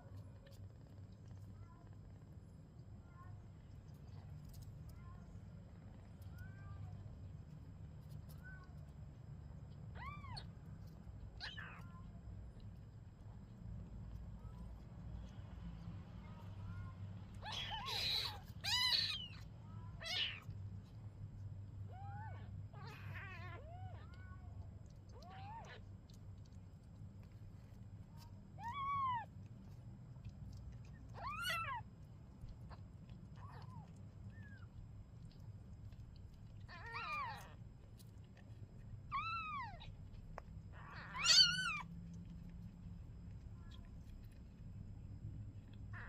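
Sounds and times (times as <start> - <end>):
kitten meowing: 11.4 - 12.0, 17.4 - 20.5, 28.6 - 29.3, 31.1 - 31.8, 36.7 - 37.6, 39.1 - 39.9, 40.8 - 41.9.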